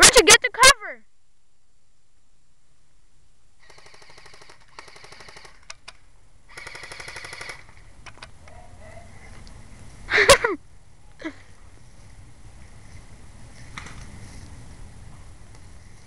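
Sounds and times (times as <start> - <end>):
airsoft gun full-auto bursts: 3.6 - 5.9, 6.5 - 7.8.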